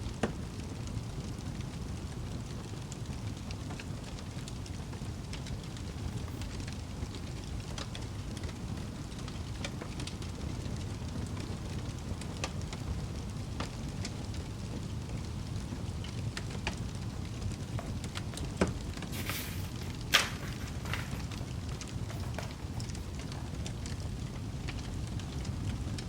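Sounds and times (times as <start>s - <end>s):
fire crackling in fireplace: 0.0s - 26.0s
rustle: 17.4s - 24.2s.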